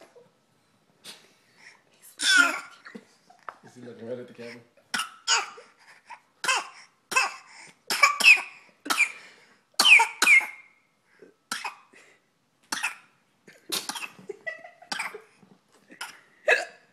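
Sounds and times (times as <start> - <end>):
baby coughing: 2.2 - 2.9, 4.9 - 5.8, 6.4 - 9.2, 9.8 - 10.7, 11.5 - 11.9, 12.7 - 14.2, 14.9 - 15.3, 16.0 - 16.8.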